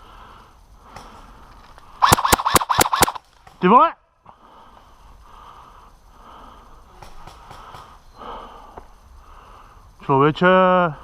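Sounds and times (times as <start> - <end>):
person breathing heavily: 0.0 - 2.0, 4.3 - 10.0.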